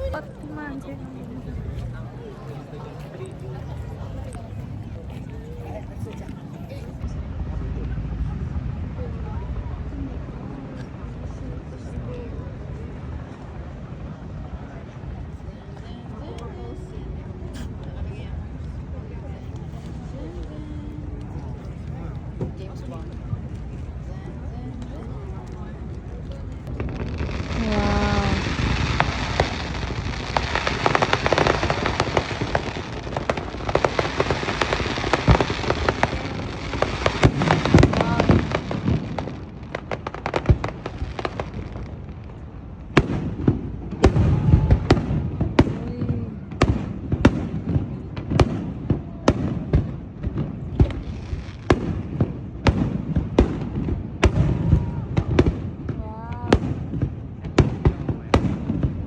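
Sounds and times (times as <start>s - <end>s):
fireworks crackling: 0.0s - 8.7s, 9.4s - 59.0s
sharp firework bangs: 26.7s - 42.2s, 42.9s - 59.0s.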